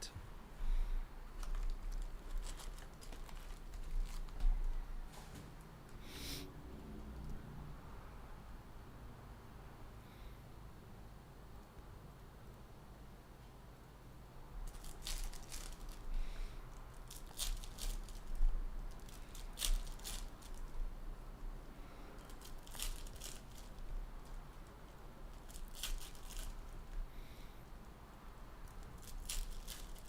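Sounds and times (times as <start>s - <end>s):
foil wrappers tearing and crinkling: 1.4s - 4.4s, 14.7s - 16.2s, 17.0s - 20.8s, 22.2s - 24.6s, 25.3s - 26.7s, 28.9s - 30.0s
cards being handled: 1.4s - 5.6s.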